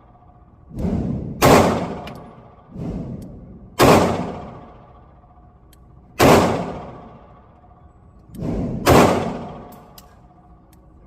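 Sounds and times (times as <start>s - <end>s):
loud pistol shots: 1.3s - 2.2s, 3.8s - 4.8s, 6.2s - 7.2s, 8.5s - 9.7s.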